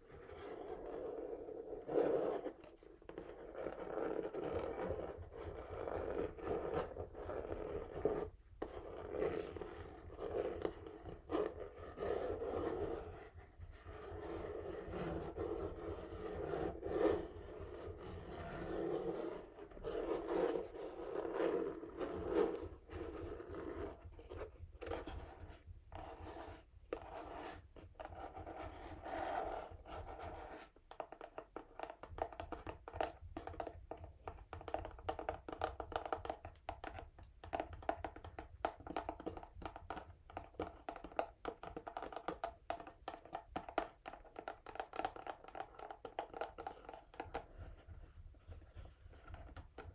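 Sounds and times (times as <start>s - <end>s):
fingernails scratching cardboard: 0.4s - 30.7s.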